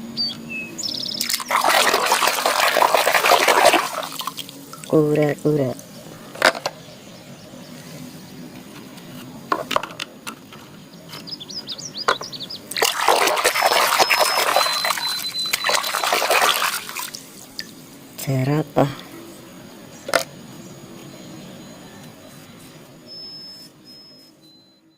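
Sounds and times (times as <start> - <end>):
water running and splashing: 1.2 - 5.4, 12.7 - 17.8.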